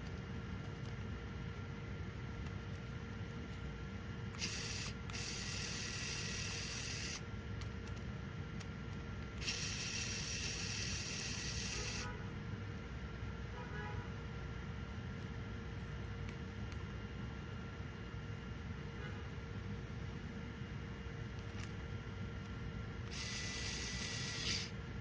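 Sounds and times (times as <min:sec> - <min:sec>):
steady low hum: 0:00.0 - 0:25.0
electric screwdriver whirring: 0:04.3 - 0:07.2, 0:09.4 - 0:12.1, 0:23.1 - 0:24.8.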